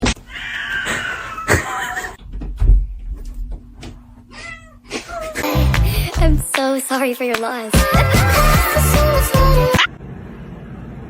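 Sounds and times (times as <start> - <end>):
cat meowing: 4.3 - 5.3.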